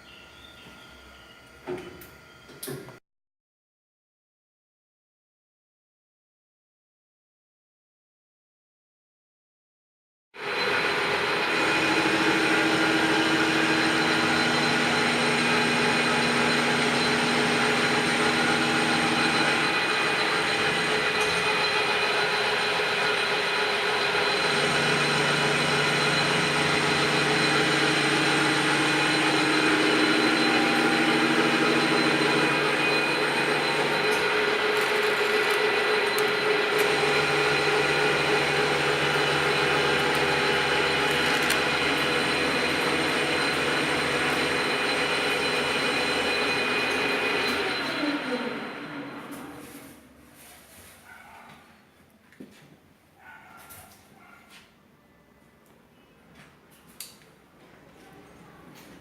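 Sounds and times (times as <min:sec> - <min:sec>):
drill machine hum: 0:10.4 - 0:49.6.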